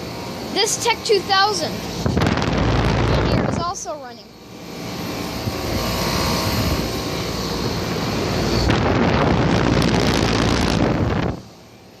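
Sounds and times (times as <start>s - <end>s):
air conditioner compressor hum: 0.0s - 12.0s
fan whoosh: 0.0s - 12.0s
rush of air on microphone: 2.0s - 3.6s, 8.2s - 11.5s.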